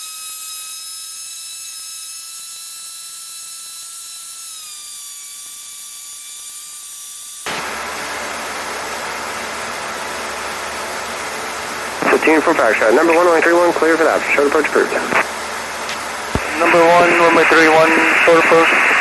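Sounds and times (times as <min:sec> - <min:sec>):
high-pitched electrical whine: 0:07.5 - 0:19.0
loud radio static hiss: 0:07.5 - 0:19.0.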